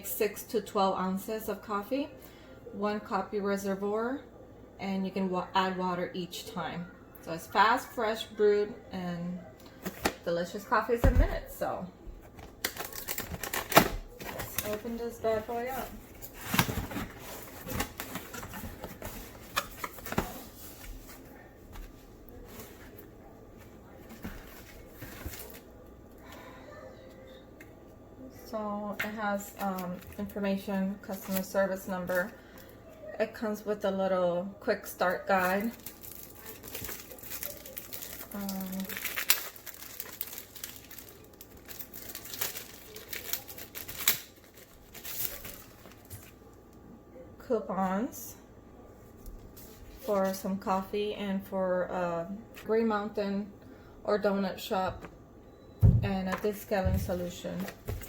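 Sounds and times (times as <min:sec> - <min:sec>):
cardboard and paper rustling: 0:12.1 - 0:25.8, 0:35.3 - 0:46.5, 0:56.3 - 0:58.0.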